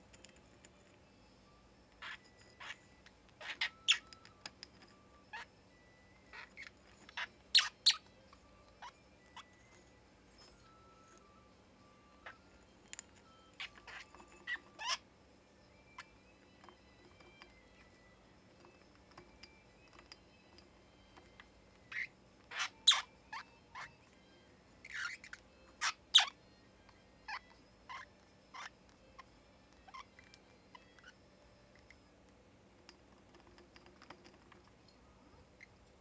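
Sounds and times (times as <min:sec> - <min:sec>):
soft bird chirps: 0:02.0 - 0:04.3, 0:05.3 - 0:08.2, 0:21.8 - 0:24.1, 0:24.8 - 0:26.4.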